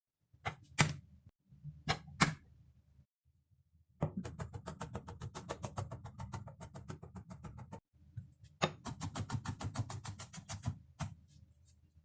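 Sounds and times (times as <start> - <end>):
knife chopping on cutting board: 8.6 - 11.2.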